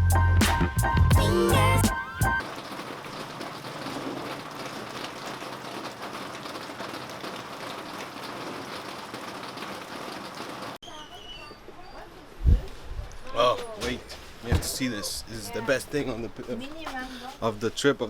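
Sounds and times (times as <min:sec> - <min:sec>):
rain pattering: 0:02.4 - 0:10.8.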